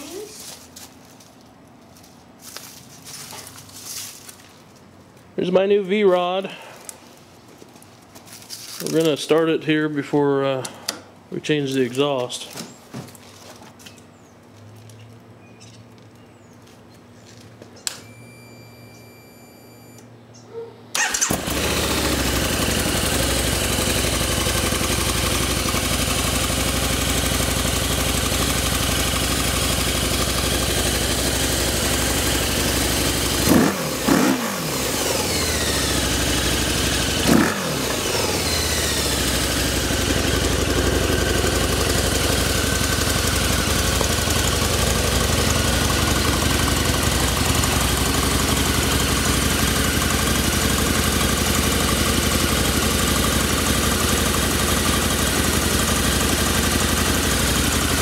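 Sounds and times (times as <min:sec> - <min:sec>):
engine throttle blips: 0:21.0 - 0:52.8
motorcycle engine idling: 0:21.0 - 0:58.0.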